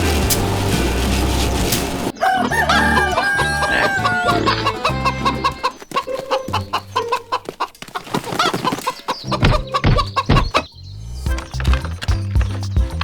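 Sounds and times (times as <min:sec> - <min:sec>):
background music: 0:00.0 - 0:05.8, 0:09.1 - 0:13.0
chickens clucking: 0:00.0 - 0:13.0.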